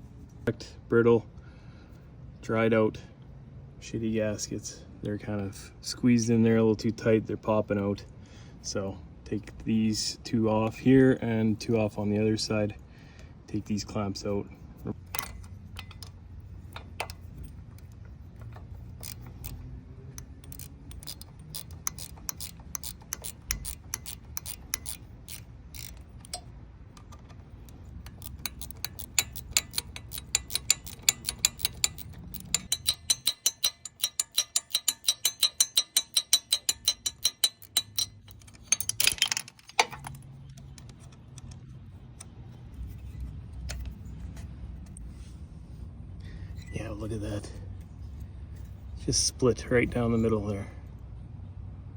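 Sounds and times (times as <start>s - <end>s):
metallic rattle: 14.8s - 45.0s
ratchet wrench clicking: 15.0s - 43.9s.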